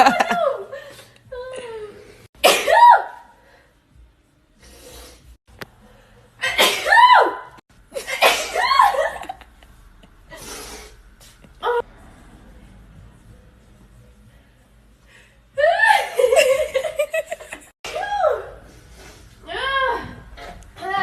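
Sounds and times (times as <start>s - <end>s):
woman sneezing: 2.4s - 3.2s, 6.4s - 7.3s, 8.0s - 9.0s.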